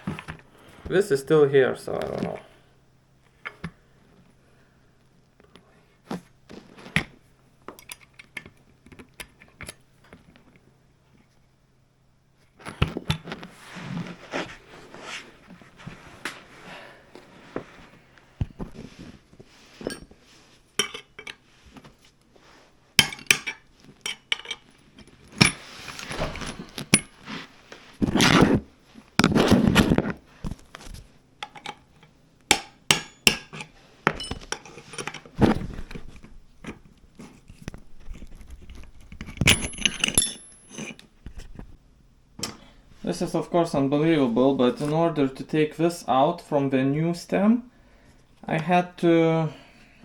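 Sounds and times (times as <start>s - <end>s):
metal tools clinking: 33.1s - 35.2s, 39.4s - 41.0s.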